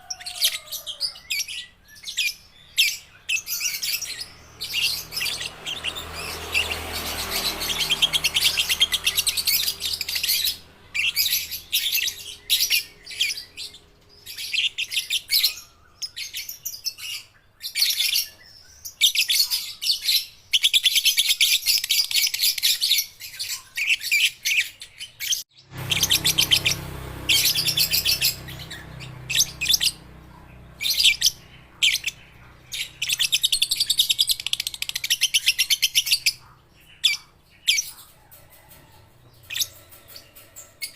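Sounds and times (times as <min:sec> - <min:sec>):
lovebirds chattering: 0:20.6 - 0:40.9.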